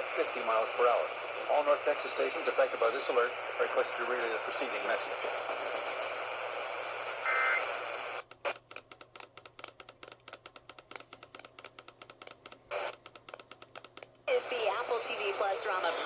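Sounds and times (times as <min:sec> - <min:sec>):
radio receiver hiss: 0:00.0 - 0:09.0, 0:09.6 - 0:16.0
rapid sharp clicks: 0:07.9 - 0:14.2.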